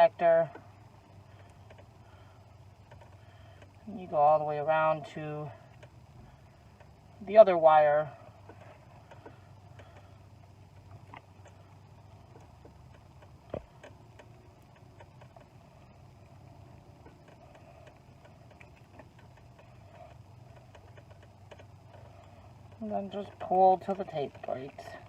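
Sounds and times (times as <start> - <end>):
low steady hum: 0.0 - 25.0.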